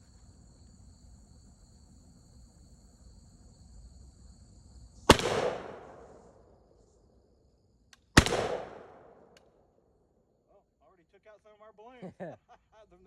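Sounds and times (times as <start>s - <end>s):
crickets chirping: 0.0s - 13.0s
shotgun shots with echo: 5.1s - 6.3s, 8.2s - 9.4s.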